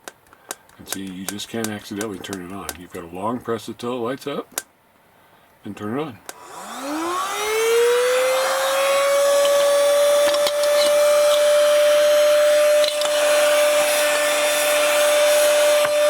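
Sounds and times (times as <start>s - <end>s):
handheld vacuum motor whine: 6.3s - 16.0s
hiss of air: 13.2s - 16.0s.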